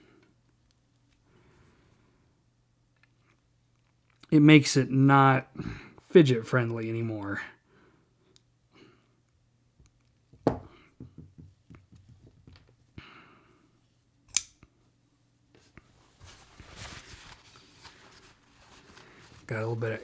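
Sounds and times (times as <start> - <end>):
folding knife blade clicking: 14.3 - 14.6
handling rustle: 15.6 - 20.0.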